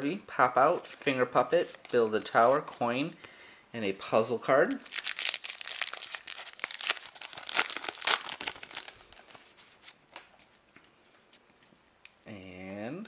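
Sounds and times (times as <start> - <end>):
wrapper tearing and crinkling: 4.8 - 9.6.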